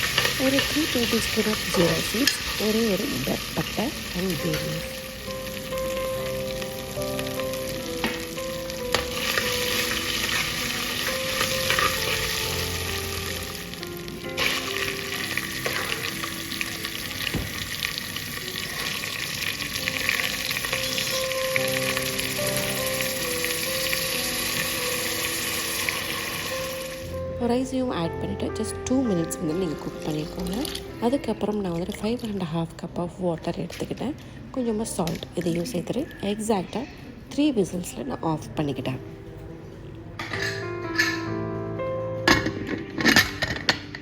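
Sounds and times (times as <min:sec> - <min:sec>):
spices sizzling in hot oil: 0:00.0 - 0:27.2, 0:29.0 - 0:32.5.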